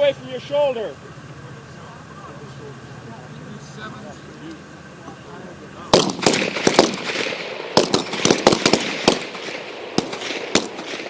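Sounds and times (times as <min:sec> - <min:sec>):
rifle shots with echo: 0:05.9 - 0:11.0.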